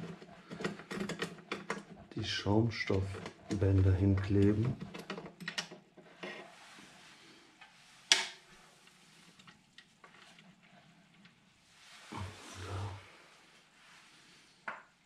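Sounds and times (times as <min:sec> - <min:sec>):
hand tools and parts clattering: 0:00.0 - 0:06.5.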